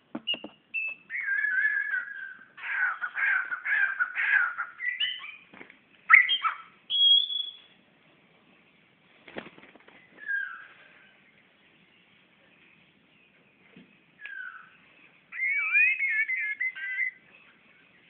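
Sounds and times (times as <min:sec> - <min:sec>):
bird whistled notes: 0:00.2 - 0:02.4, 0:06.1 - 0:07.7, 0:15.4 - 0:17.2
songbird harsh rasping calls: 0:00.3 - 0:05.5, 0:06.1 - 0:07.7, 0:14.2 - 0:17.2.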